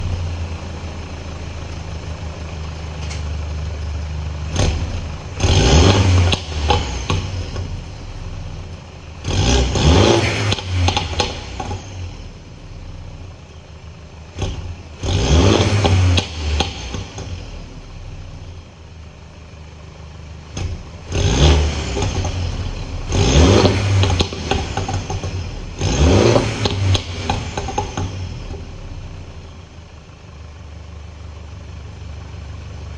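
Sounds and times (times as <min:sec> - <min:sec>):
car engine revving: 0:00.0 - 0:18.8, 0:20.4 - 0:30.2
exhaust pops and crackles: 0:04.5 - 0:12.0, 0:14.4 - 0:17.4, 0:20.5 - 0:29.4.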